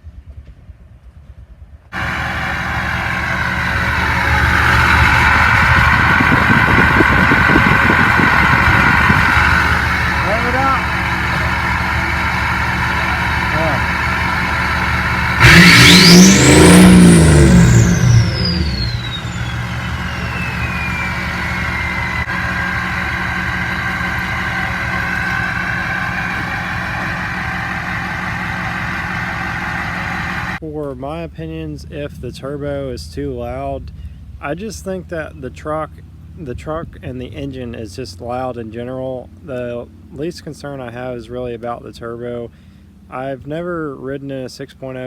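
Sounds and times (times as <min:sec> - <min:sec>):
diesel engine rumble: 0:01.6 - 0:45.0
turbo whistle: 0:12.9 - 0:27.5.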